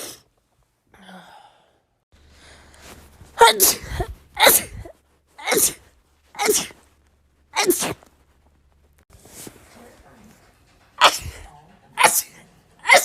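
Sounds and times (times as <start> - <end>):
woman sneezing: 3.4 - 6.8, 7.6 - 8.1, 11.0 - 13.0.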